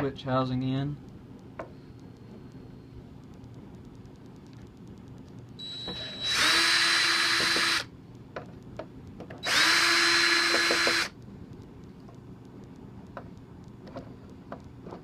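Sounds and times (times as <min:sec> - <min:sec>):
power drill whining: 0:05.6 - 0:07.9, 0:09.4 - 0:11.1.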